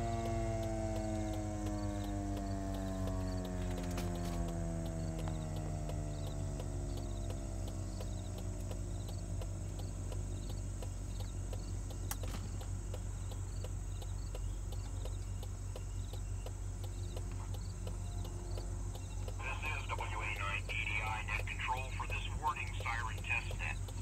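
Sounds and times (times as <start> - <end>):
warning siren winding down: 0.0 - 10.4
insects chirping: 0.1 - 24.0.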